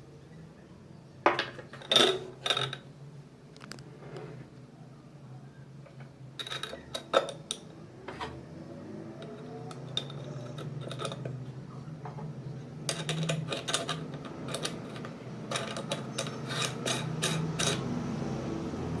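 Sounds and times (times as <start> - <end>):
meat grinder parts clinking: 6.4 - 7.6, 9.2 - 11.4, 12.9 - 17.9.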